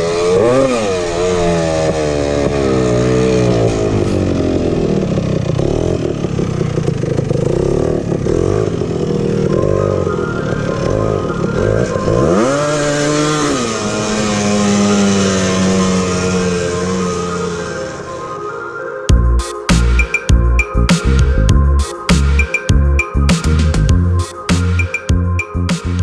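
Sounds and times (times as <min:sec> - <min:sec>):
two-stroke engine revving: 0:00.0 - 0:18.0.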